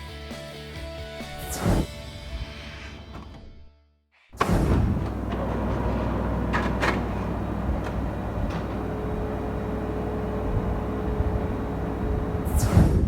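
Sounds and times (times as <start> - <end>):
printer mechanical grinding: 4.4 - 12.5.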